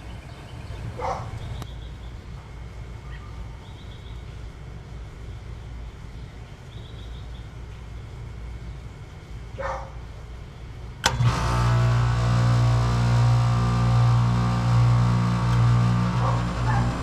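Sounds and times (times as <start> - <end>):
condensing unit humming: 0.0 - 17.0
switch click: 14.8 - 15.9.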